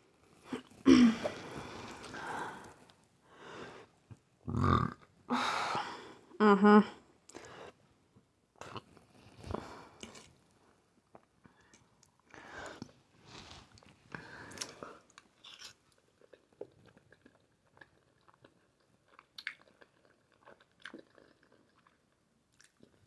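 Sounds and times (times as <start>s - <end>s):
chewing and wet mouth sounds: 13.8s - 23.0s.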